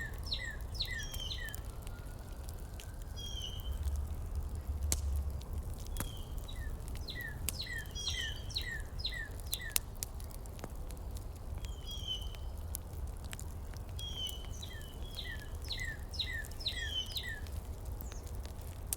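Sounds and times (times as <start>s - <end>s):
songbird chirping: 0.0s - 4.0s, 5.9s - 9.8s, 14.0s - 18.3s.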